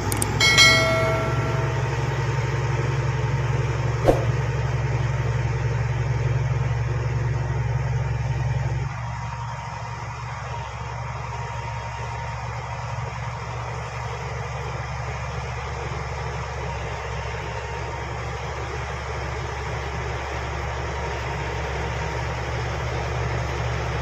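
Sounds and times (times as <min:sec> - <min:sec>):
bulldozer diesel engine: 0:00.0 - 0:03.8
sharp metallic clank: 0:00.4 - 0:02.3, 0:04.0 - 0:04.5.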